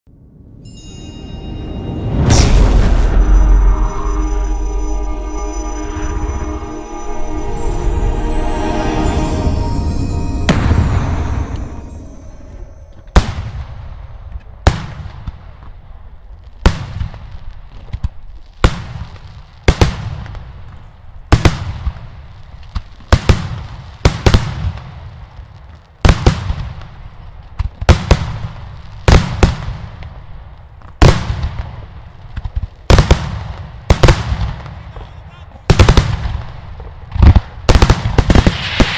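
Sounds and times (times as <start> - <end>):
fireworks bursts echoing: 37.7 - 38.9.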